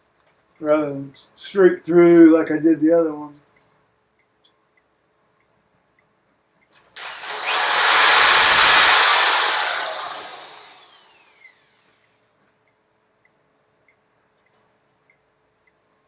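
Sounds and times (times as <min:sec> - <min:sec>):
electric drill whine: 0:07.0 - 0:12.1.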